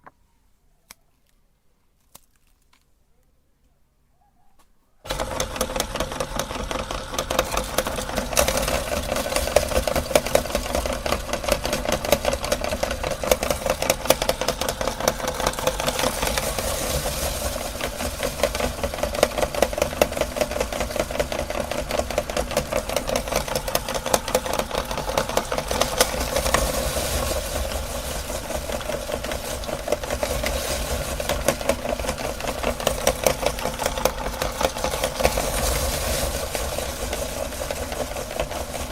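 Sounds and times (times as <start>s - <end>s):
electric meat grinder crushing cookies: 5.1s - 38.9s.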